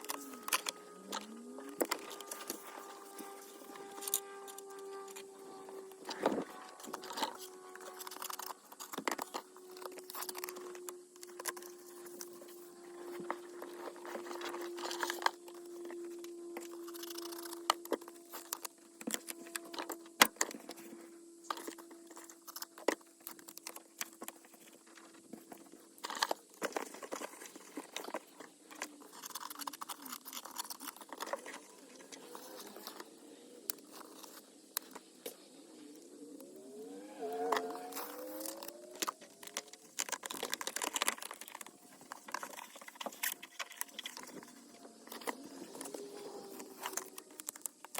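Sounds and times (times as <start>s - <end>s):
mat crinkling and rustling: 37.4s - 47.9s.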